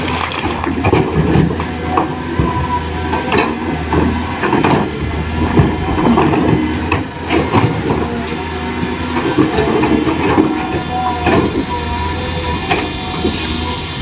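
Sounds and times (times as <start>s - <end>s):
clicks and scraping: 0.0s - 13.8s
toy motors and gears whirring: 7.6s - 14.0s.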